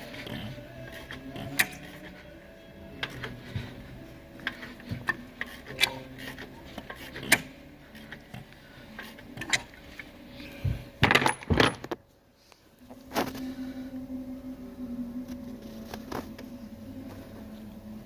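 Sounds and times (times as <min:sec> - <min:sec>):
steady engine hum: 0:00.0 - 0:11.0, 0:12.1 - 0:18.0
loud clatter of knocks: 0:11.0 - 0:12.0.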